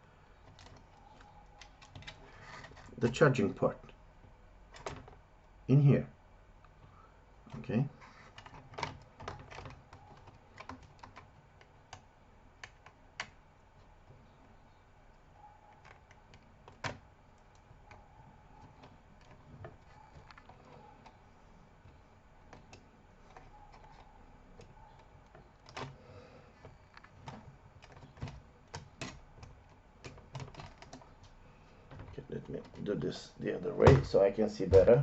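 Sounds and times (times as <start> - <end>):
plastic and metal parts clicking: 0.4 - 3.0, 7.5 - 12.0, 26.6 - 32.9.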